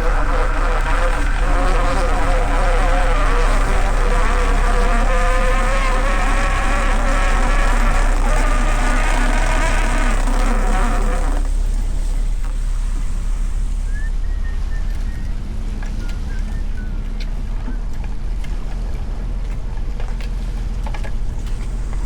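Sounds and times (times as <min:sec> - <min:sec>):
buzzing motor: 0:00.0 - 0:13.8
low engine rumble: 0:00.0 - 0:22.0.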